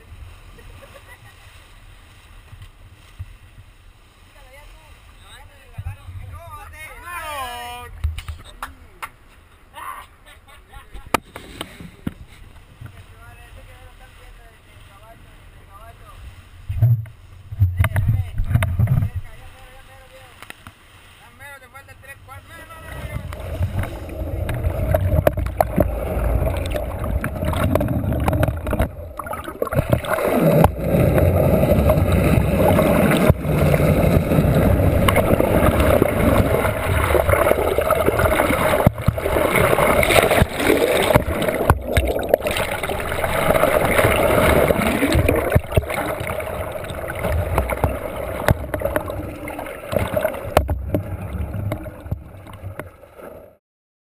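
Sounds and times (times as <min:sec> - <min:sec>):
water rushing and gurgling: 0:11.2 - 0:53.6.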